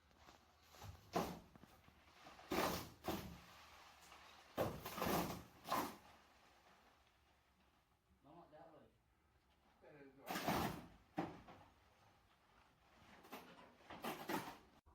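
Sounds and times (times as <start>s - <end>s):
short knocks and scrapes: 12.9s - 14.8s.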